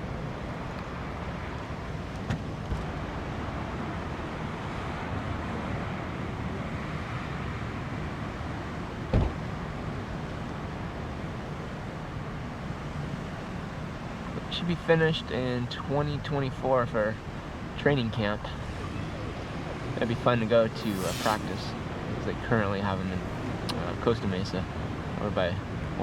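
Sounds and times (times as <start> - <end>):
road traffic rumble: 0.0 - 26.0
short thump: 9.1 - 9.4.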